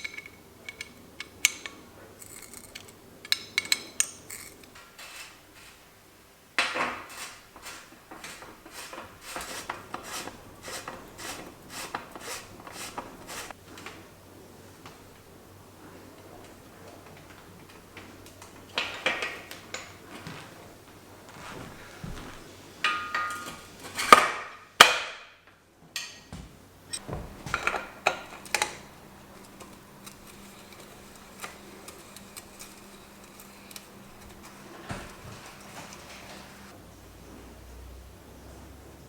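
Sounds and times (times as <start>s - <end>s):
tools clicking and tapping: 0.0s - 4.8s.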